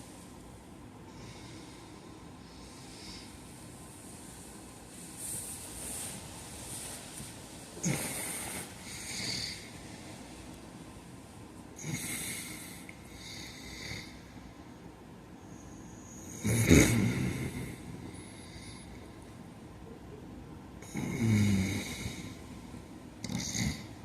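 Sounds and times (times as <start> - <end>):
man snoring: 7.8 - 9.7, 11.8 - 14.2, 16.2 - 17.9, 20.8 - 22.4, 23.2 - 24.0.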